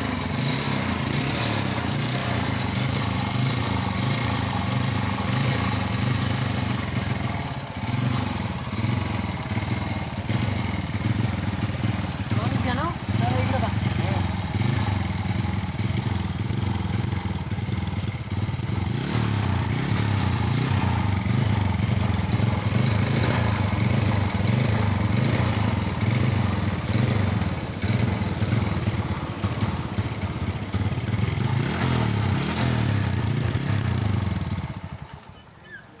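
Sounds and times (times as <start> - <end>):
motorcycle engine idling: 0.0 - 36.0.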